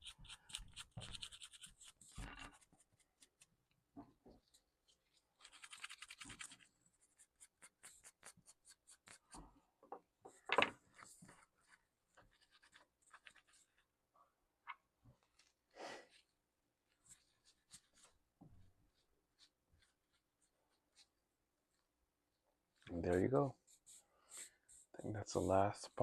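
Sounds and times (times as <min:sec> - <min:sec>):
scratchy rubbing strokes: 0:00.0 - 0:03.5, 0:23.0 - 0:26.0.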